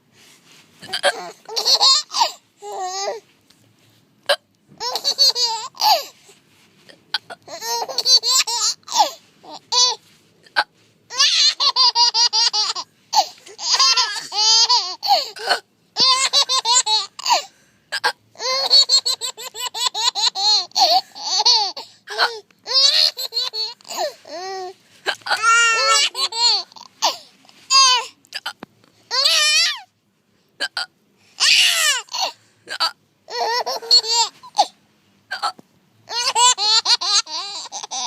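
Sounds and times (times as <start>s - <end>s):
baby giggling: 0.8s - 3.2s, 4.3s - 6.1s, 7.1s - 17.4s, 18.4s - 24.4s, 25.1s - 28.1s, 33.3s - 34.7s, 35.3s - 38.0s
fake hiccup noises: 4.2s - 4.5s, 7.1s - 7.5s, 28.3s - 28.7s, 30.6s - 31.0s, 32.7s - 33.0s, 34.6s - 35.6s.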